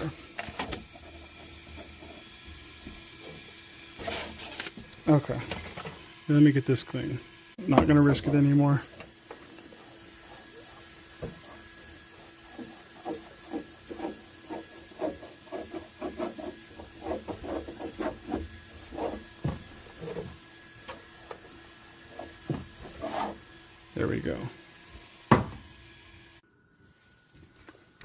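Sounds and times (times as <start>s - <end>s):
steady hum: 0.0s - 28.0s
scraping a printer nozzle: 4.0s - 5.9s, 11.2s - 20.4s.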